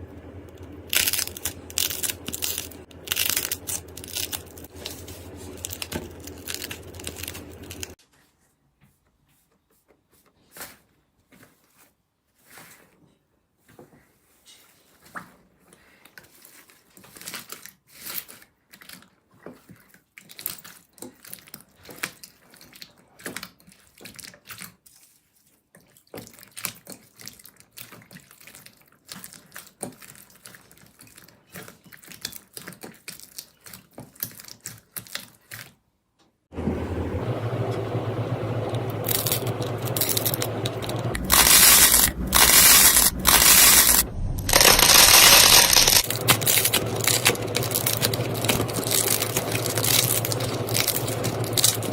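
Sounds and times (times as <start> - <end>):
slime crackling and crunching: 0.8 - 8.0, 39.0 - 51.9.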